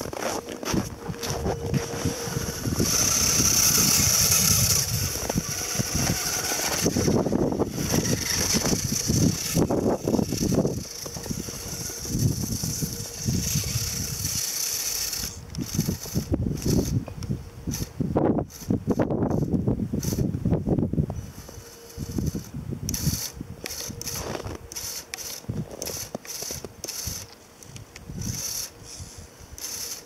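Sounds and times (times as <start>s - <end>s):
tyres crunching on snow: 0.0s - 14.8s
small electric motor whirring: 0.0s - 20.5s, 21.1s - 30.0s.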